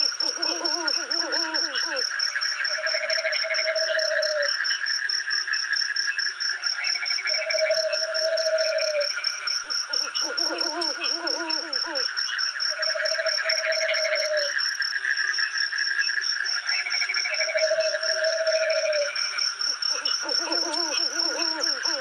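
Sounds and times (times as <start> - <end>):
wavering calls: 0.0 - 2.1, 9.8 - 12.1, 17.5 - 22.0
high insect chirp: 0.0 - 22.0
humming calls: 19.9 - 22.0.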